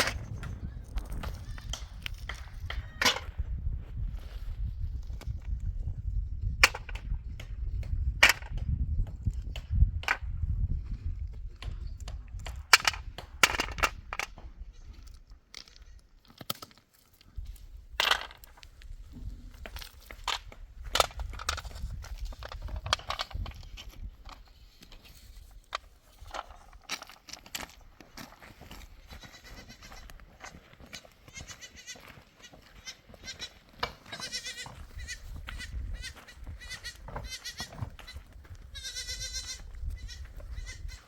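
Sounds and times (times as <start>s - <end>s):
sharp knocks and cracks: 6.6s - 10.3s, 11.6s - 14.5s.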